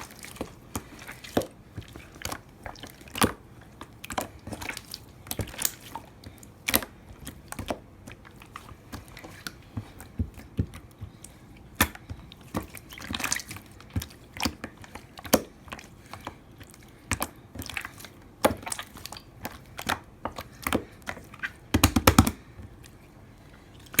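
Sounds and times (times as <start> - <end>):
wet clicks and pops: 21.7 - 22.4.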